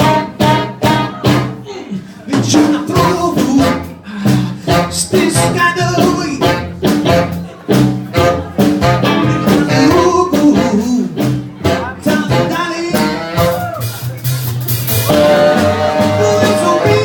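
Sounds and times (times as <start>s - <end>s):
person singing: 0.0s - 6.6s, 9.1s - 13.9s, 15.0s - 17.0s
bass: 0.0s - 17.0s
guitar: 0.0s - 17.0s
steady drum beat: 0.0s - 17.0s.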